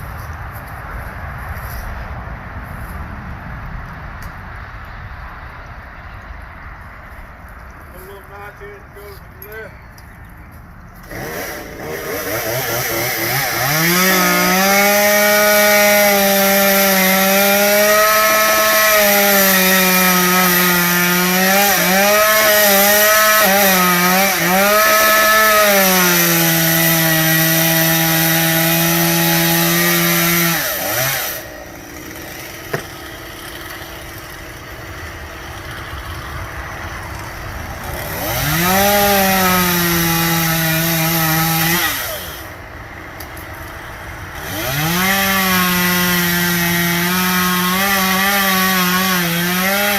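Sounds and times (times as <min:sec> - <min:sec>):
chainsaw cutting wood: 0:11.0 - 0:42.6, 0:43.2 - 0:49.9.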